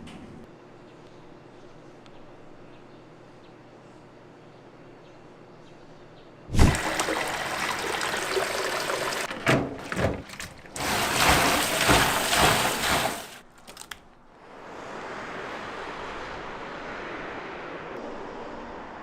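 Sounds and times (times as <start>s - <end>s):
water running hard: 6.5s - 13.4s.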